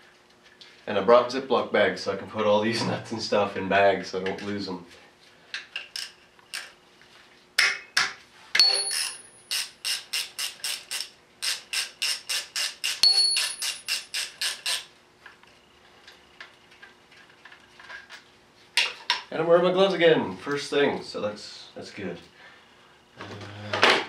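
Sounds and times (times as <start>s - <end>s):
ratchet wrench clicking: 8.7s - 14.9s.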